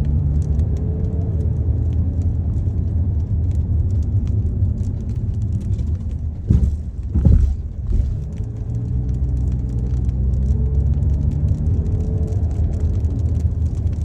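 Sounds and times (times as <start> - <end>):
road rumble and engine hum: 0.0 - 14.0
low thumps: 4.2 - 10.0.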